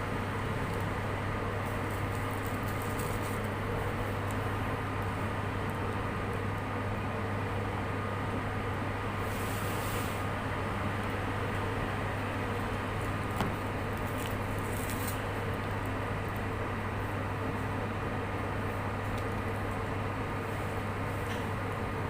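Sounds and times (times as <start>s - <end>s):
electrical hum: 0.0s - 22.0s.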